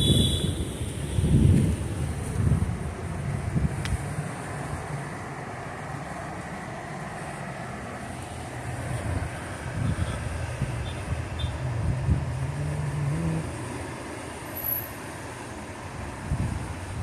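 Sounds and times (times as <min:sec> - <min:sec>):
motor traffic: 0:00.0 - 0:17.0
vehicle engine accelerating: 0:01.3 - 0:14.9.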